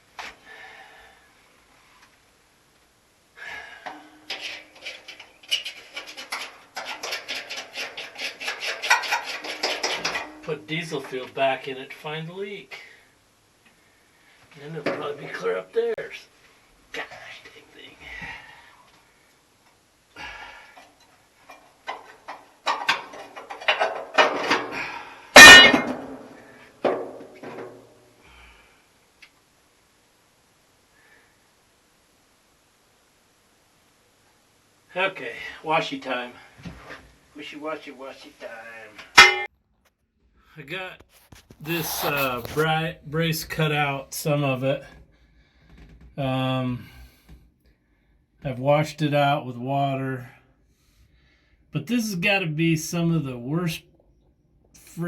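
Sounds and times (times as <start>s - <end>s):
ringing metal clang: 3.9s - 4.6s, 25.4s - 26.3s, 39.2s - 39.5s
hand tool scraping metal tank: 3.9s - 10.5s, 41.6s - 42.9s
tools clinking on metal: 25.4s - 26.0s.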